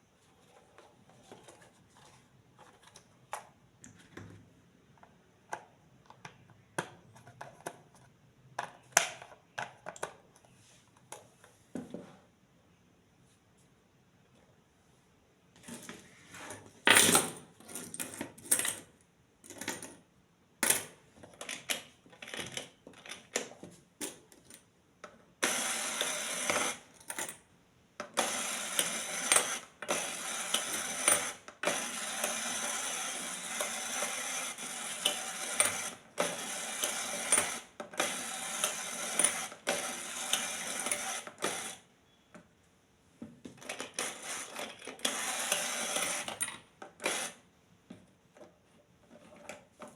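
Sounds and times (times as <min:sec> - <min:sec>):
plastic parts clicking and tapping: 0:02.6 - 0:11.9.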